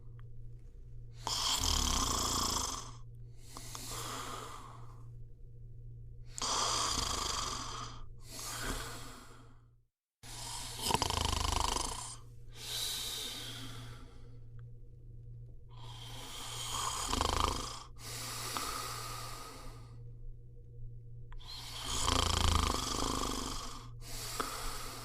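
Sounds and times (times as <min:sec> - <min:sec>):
person snoring: 0:01.2 - 0:05.0, 0:06.3 - 0:09.6, 0:10.2 - 0:14.4, 0:15.7 - 0:20.0, 0:21.4 - 0:25.0
breathy out-breath: 0:02.8 - 0:05.1, 0:06.3 - 0:11.0, 0:11.9 - 0:14.6, 0:15.7 - 0:20.1, 0:23.4 - 0:25.0.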